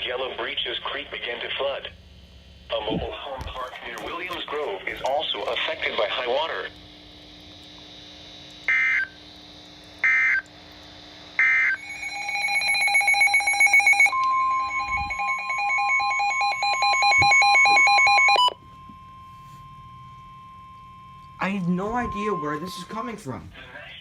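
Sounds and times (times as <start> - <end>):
warbling electronic alarm: 8.7 - 9.2, 10.0 - 10.5, 11.4 - 23.4
electronic data tone bursts: 11.4 - 19.6, 20.5 - 23.3
steady single-pitch attention tone: 11.4 - 23.4.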